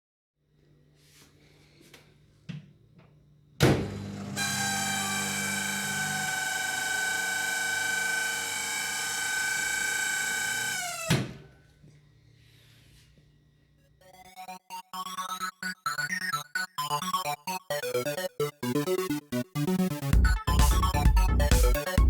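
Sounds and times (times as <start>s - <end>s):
microwave oven click: 3.6s - 5.7s
microwave high-pitched squeal: 4.0s - 10.8s.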